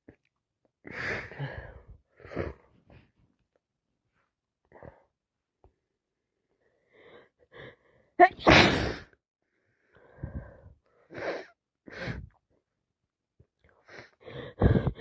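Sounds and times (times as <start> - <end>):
woman sneezing: 8.2 - 9.1
catching breaths: 13.8 - 15.0.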